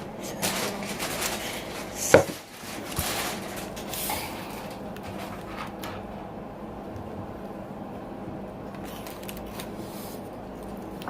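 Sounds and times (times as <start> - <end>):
takeout packaging rustling: 0.0 - 6.2, 8.8 - 10.8.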